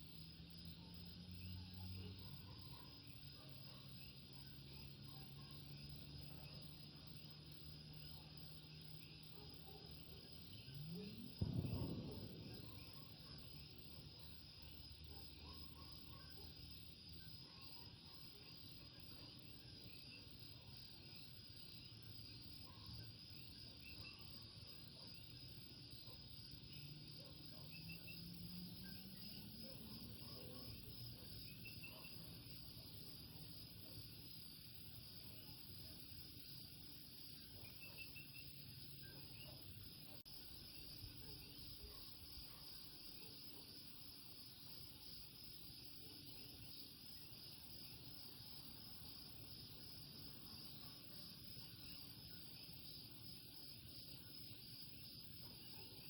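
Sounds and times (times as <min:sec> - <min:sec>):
high insect trill: 0:10.4 - 0:13.8.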